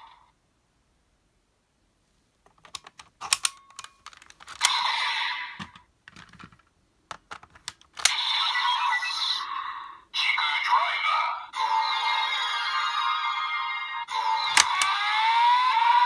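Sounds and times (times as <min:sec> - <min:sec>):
plastic toy parts clicking: 0:02.5 - 0:08.3, 0:14.4 - 0:15.0.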